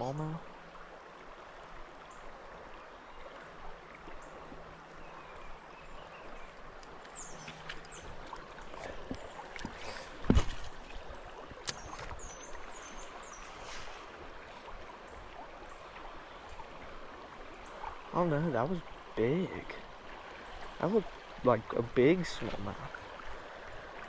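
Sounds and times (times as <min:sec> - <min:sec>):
creek water running: 0:00.0 - 0:24.0
sharp knock or splash: 0:09.6 - 0:10.8.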